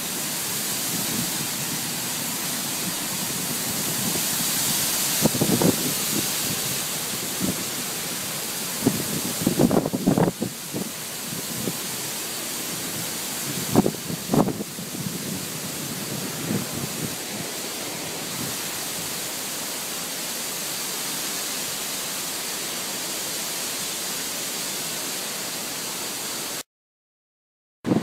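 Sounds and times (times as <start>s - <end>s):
steady hiss-like noise: 0.0s - 26.6s.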